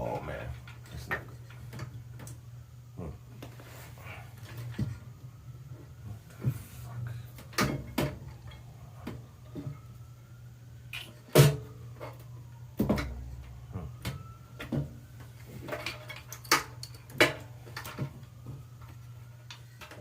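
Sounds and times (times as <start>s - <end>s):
steady low hum: 0.0s - 20.0s
knocks and clatter of tools: 12.8s - 20.0s.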